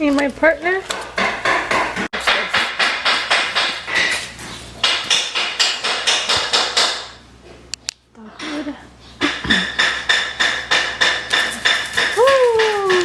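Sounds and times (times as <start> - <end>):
nail gun or hammer knocks: 0.9 - 4.2, 4.8 - 7.2, 9.2 - 13.0.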